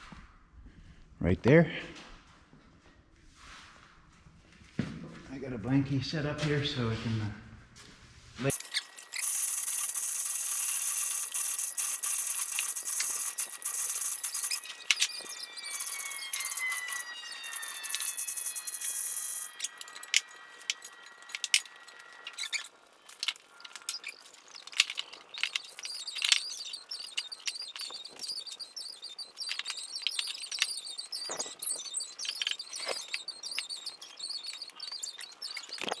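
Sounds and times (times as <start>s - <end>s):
sharp clicks and knocks: 8.5s - 36.0s
small birds chirping: 8.5s - 36.0s.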